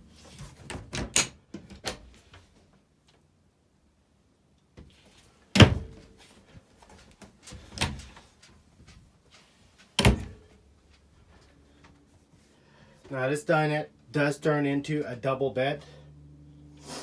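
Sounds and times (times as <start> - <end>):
sharp knocks of doors shutting: 5.6 - 6.0, 10.0 - 10.4.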